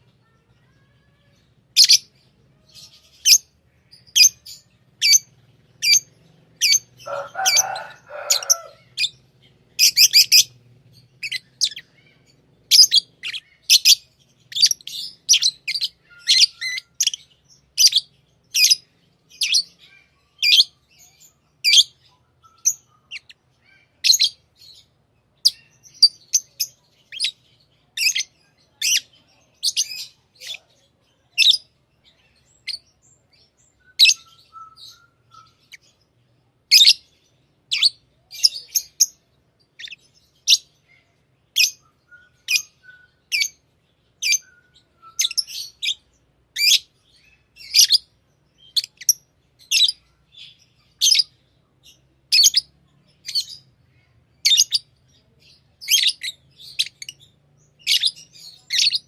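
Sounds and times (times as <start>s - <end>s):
lovebirds chirping: 0.0s - 59.0s
rough bird call: 3.2s - 17.2s.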